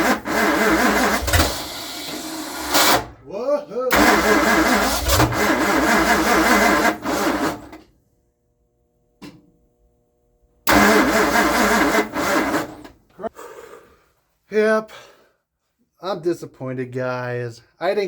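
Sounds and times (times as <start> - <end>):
starter cranking engine: 0.0 - 3.1, 3.9 - 7.8, 10.7 - 13.0.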